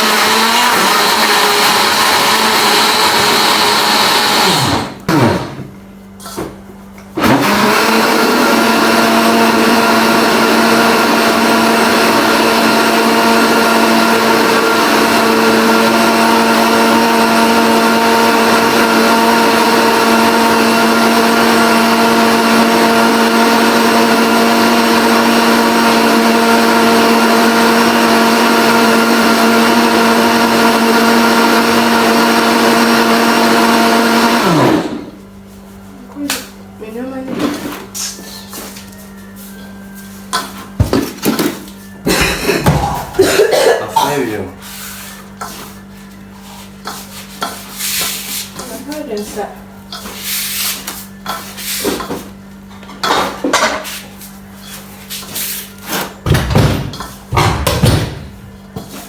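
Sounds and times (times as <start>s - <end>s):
electric blender motor running: 0.0s - 5.7s, 7.2s - 35.2s.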